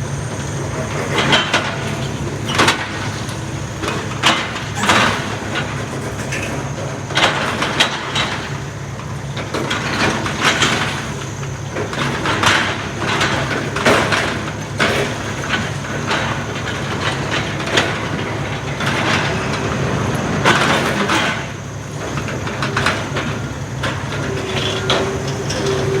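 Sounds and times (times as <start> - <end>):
heavy demolition machinery running: 0.0 - 26.0.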